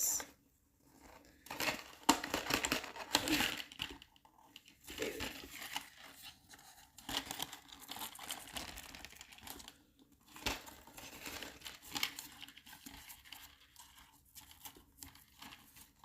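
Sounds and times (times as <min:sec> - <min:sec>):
packaging crinkling and rustling: 0:01.0 - 0:16.0.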